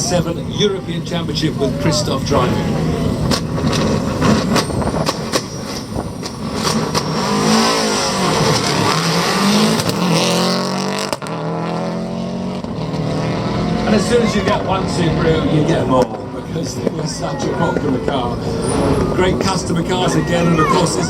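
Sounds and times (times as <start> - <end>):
rally car engine revving: 0.0 - 21.0
gear changes: 2.6 - 11.3.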